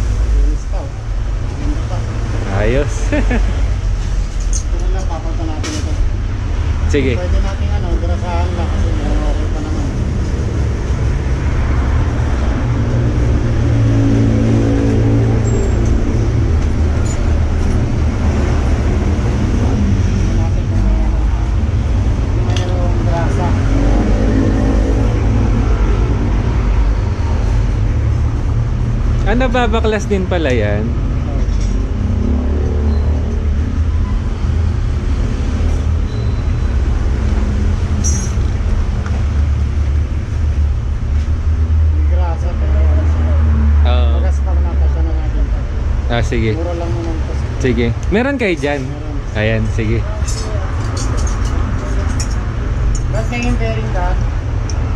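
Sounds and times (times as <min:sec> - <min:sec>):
low rumble of traffic: 0:00.0 - 0:54.9
passing vehicle engine: 0:00.0 - 0:54.9
metallic clink: 0:38.0 - 0:38.6.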